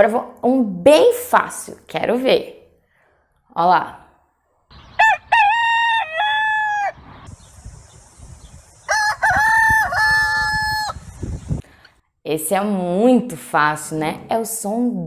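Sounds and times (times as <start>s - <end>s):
rooster crowing: 4.8s - 7.0s, 8.8s - 11.0s.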